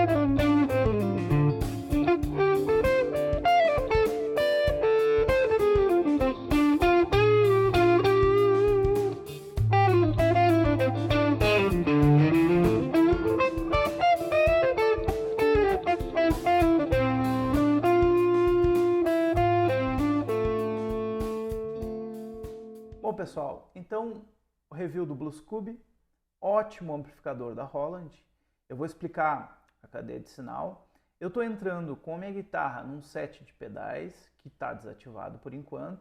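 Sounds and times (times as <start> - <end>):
bass line: 0.0 - 22.6
electric guitar lead melody: 0.0 - 23.0
drums: 0.0 - 23.2.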